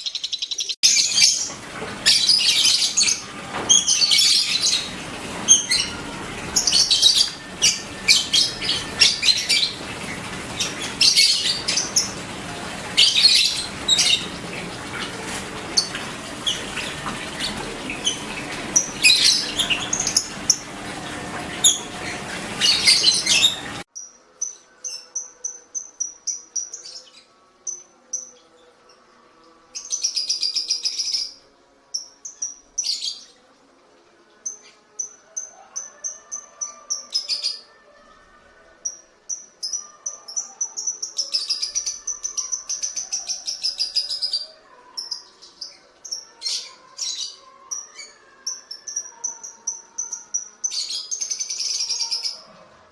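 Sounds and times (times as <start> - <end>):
birds chirping: 0.0 - 23.8.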